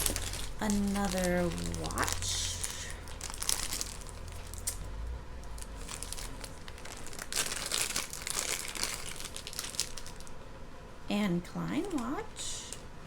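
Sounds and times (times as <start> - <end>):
plastic bag crinkling: 0.0 - 10.4.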